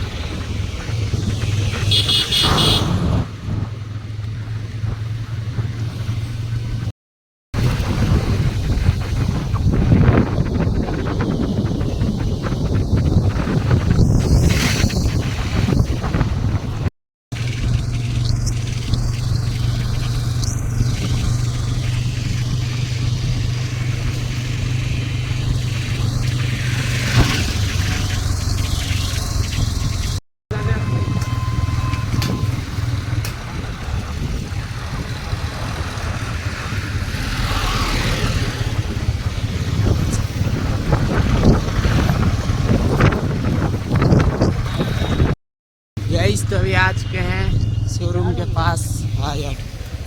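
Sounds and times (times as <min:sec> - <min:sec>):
motorcycle engine running: 0:00.0 - 0:06.9, 0:15.1 - 0:45.4
road and wind noise: 0:00.0 - 0:45.4, 0:46.0 - 0:50.0.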